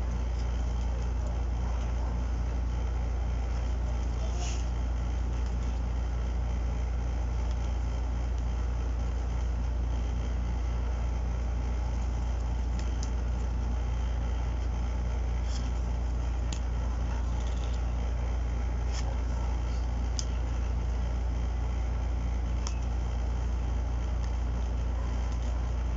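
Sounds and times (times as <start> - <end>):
steady low hum: 0.0 - 25.9
cards being handled: 4.6 - 5.9, 7.2 - 8.6, 11.8 - 13.7, 14.5 - 20.6, 24.1 - 25.9.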